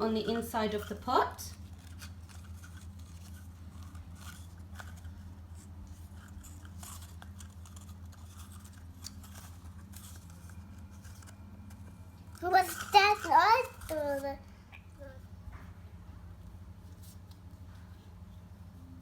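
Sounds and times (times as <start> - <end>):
paper rustling: 0.0 - 14.3
steady low hum: 0.0 - 19.0.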